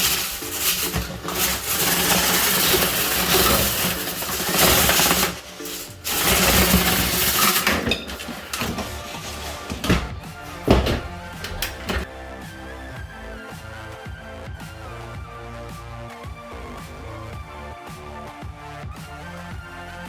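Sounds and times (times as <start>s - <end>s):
power drill spinning brush in duct: 0.0s - 12.0s.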